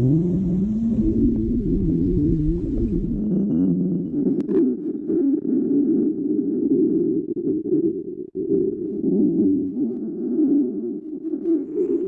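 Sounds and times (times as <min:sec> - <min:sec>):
stomach growling: 0:00.0 - 0:12.0.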